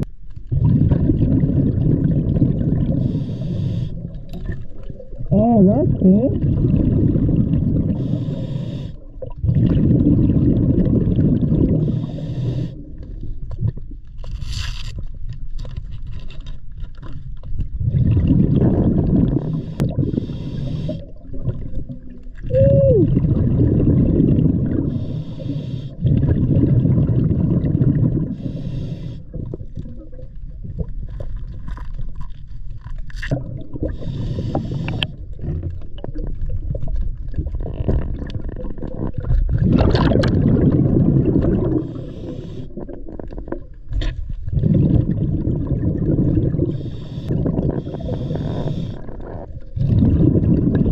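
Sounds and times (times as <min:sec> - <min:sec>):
exhaled bubbles underwater: 0:00.0 - 0:14.2, 0:17.2 - 0:50.9
regulator inhalation hiss: 0:08.0 - 0:09.0, 0:46.7 - 0:49.0.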